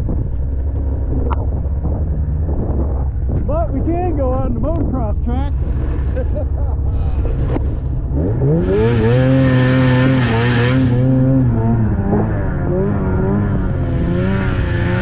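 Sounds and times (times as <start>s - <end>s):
snowmobile engine revving: 5.5s - 15.0s.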